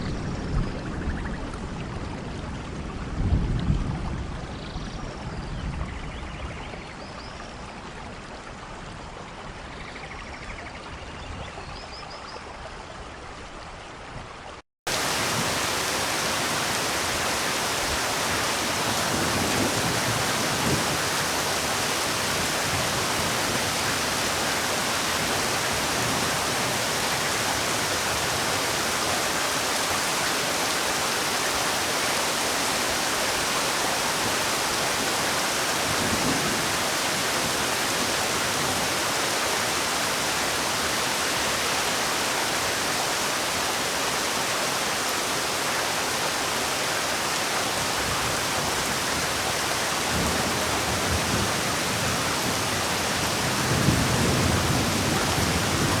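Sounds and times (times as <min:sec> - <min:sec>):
rain falling: 0:00.0 - 0:09.8, 0:14.9 - 0:56.0
hiss of heavy rain: 0:14.9 - 0:56.0.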